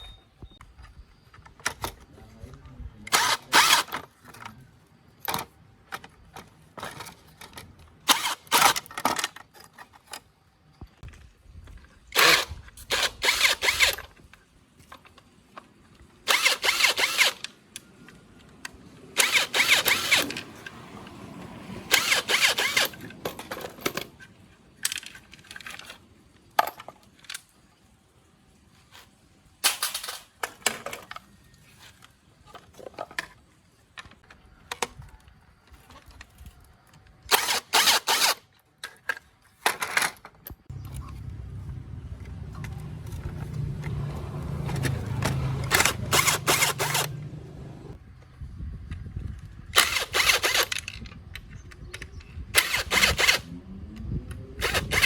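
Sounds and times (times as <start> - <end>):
power tool bursts: 3.1 - 4.0, 8.1 - 8.8, 12.2 - 14.0, 16.3 - 17.5, 19.2 - 20.7, 21.9 - 23.1, 37.3 - 38.4, 44.6 - 48.0, 49.8 - 50.8, 52.6 - 53.5, 54.6 - 55.0
metal parts clicking and knocking: 5.2 - 10.4, 21.9 - 27.5, 29.6 - 31.2, 37.0 - 47.7, 49.8 - 53.4.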